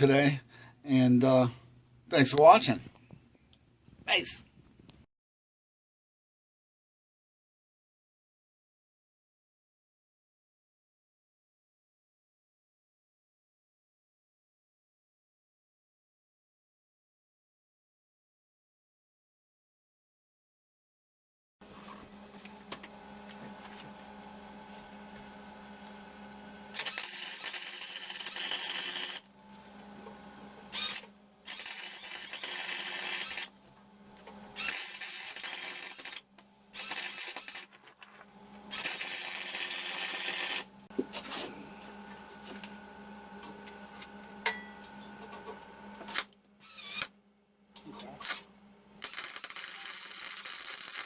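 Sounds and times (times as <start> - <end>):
steady electrical hum: 21.7 - 51.0
electric arc welding: 26.7 - 29.3, 30.7 - 33.6, 34.6 - 37.7, 38.7 - 40.7, 49.0 - 51.0.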